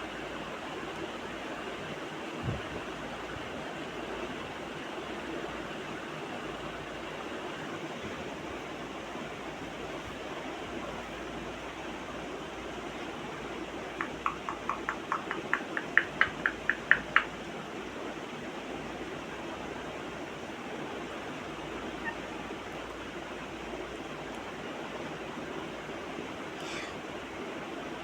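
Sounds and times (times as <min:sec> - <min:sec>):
parrot calling short notes: 0:26.6 - 0:27.0.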